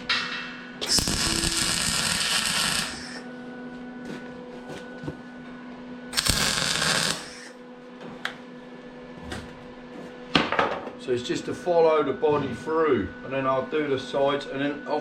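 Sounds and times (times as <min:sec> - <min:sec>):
welding arc crackling: 0:00.8 - 0:03.2, 0:06.1 - 0:07.5
welder humming: 0:00.8 - 0:03.3, 0:06.1 - 0:07.6.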